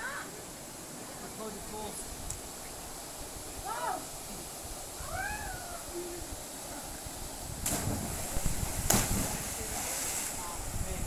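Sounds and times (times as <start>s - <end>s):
wind buffeting microphone: 4.7s - 11.0s.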